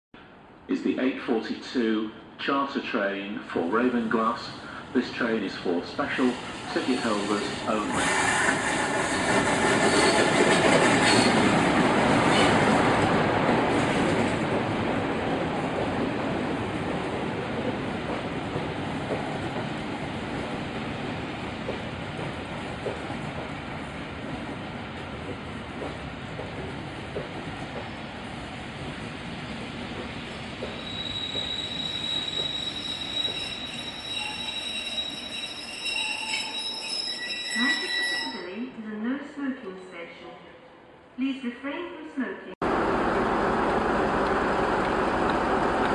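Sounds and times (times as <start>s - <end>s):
train wheels clattering on rails: 8.0s - 34.2s
wheel squeals: 9.6s - 11.4s, 30.6s - 38.6s
train running rumble: 42.6s - 45.9s.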